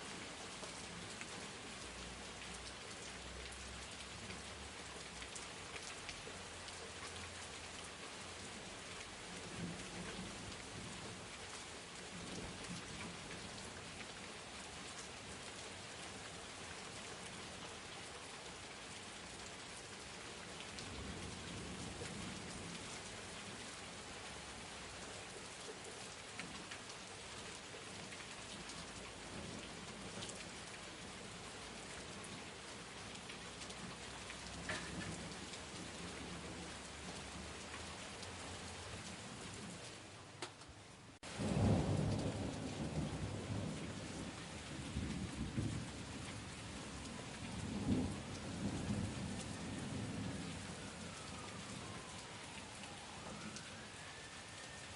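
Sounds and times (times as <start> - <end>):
rain pattering: 0.0 - 54.9
distant thunder rumbling: 41.2 - 52.1.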